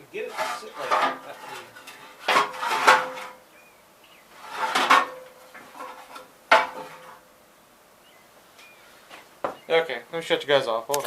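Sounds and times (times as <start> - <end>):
metal parts clanking and rattling: 0.3 - 3.4, 4.4 - 7.2.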